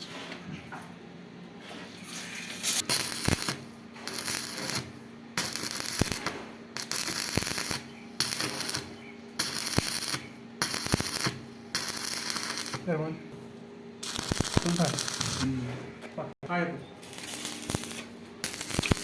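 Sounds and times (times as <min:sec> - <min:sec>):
steady electrical hum: 0:00.0 - 0:19.0
welding arc crackling: 0:02.6 - 0:13.1, 0:14.0 - 0:15.6, 0:17.0 - 0:19.0.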